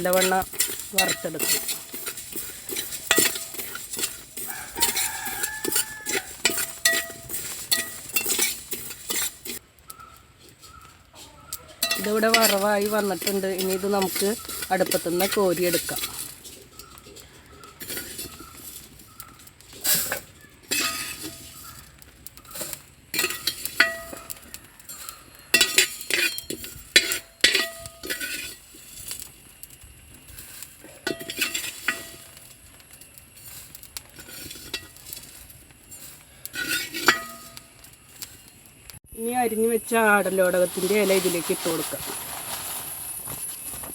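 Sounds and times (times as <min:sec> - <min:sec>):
spoon scraping and knocking in pan: 0:00.0 - 0:29.4, 0:30.1 - 0:38.5.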